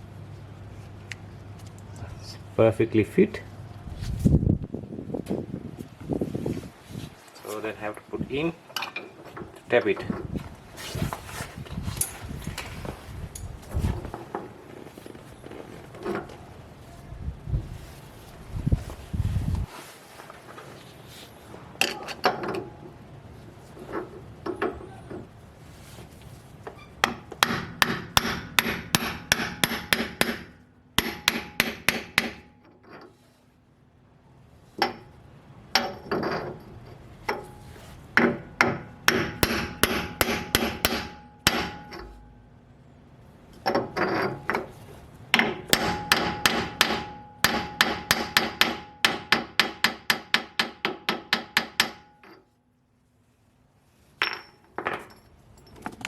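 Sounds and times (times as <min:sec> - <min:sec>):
hammer tapping metal tool: 0:27.0 - 0:33.0, 0:45.4 - 0:52.5.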